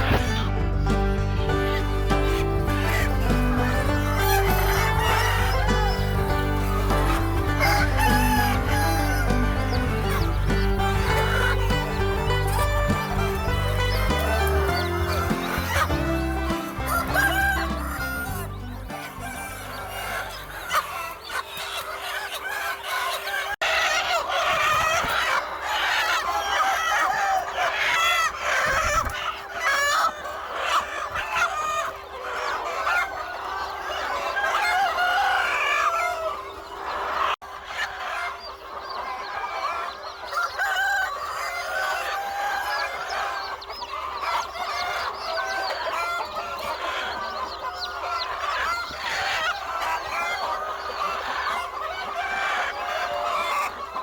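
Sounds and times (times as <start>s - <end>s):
rooster crowing: 0.0s - 21.4s
chickens clucking: 0.0s - 54.0s.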